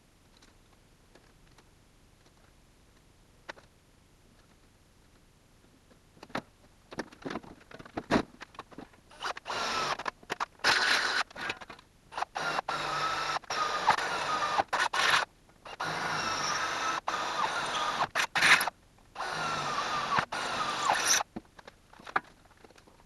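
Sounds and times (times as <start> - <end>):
power drill boring steel: 9.2 - 10.0, 10.6 - 11.3, 12.2 - 21.2.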